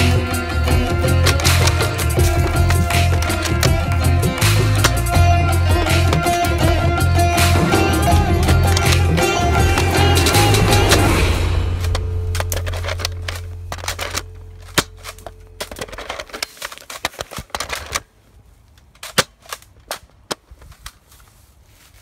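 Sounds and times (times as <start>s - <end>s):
low background music: 0.0s - 16.3s.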